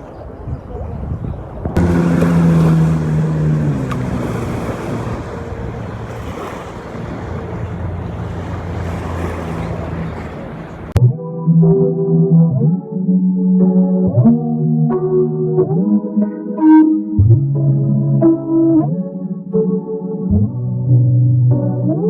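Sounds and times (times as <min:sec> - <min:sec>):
wind buffeting microphone: 0:00.0 - 0:11.0
motorboat engine running: 0:01.8 - 0:11.0
music: 0:11.0 - 0:22.0.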